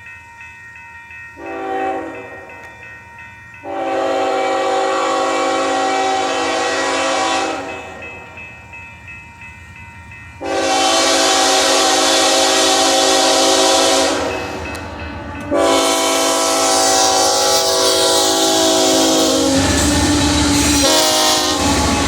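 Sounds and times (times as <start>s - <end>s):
locomotive air horn chord: 1.4s - 2.5s, 3.6s - 8.0s, 10.4s - 14.7s, 15.5s - 22.0s.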